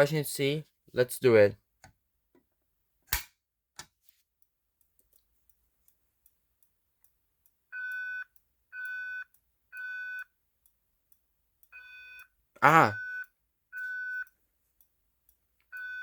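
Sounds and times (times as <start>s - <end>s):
fire alarm beeps: 7.7s - 10.3s, 11.7s - 12.3s, 12.9s - 14.3s, 15.7s - 16.0s.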